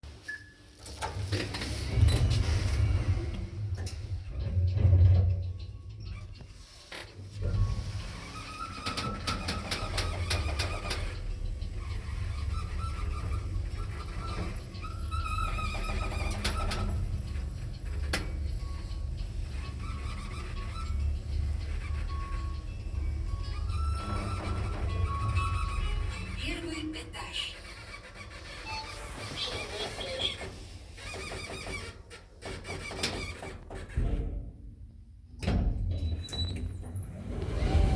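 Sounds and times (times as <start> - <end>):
low rumble: 1.8 - 6.4
elevator squealing: 4.4 - 33.4, 36.0 - 37.9.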